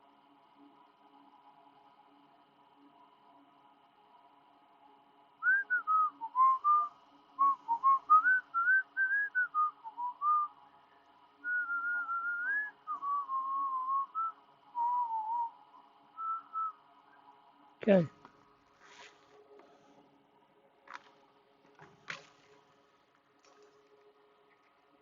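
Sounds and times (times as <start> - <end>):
faint steady hum: 0.0 - 25.0
person whistling a tune: 5.4 - 10.5, 11.4 - 15.6.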